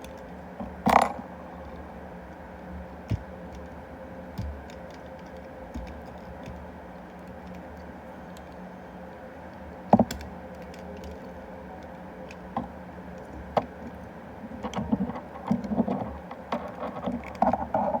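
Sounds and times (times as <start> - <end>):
faint steady hum: 0.0 - 18.0
plastic toy parts clicking: 10.0 - 12.4.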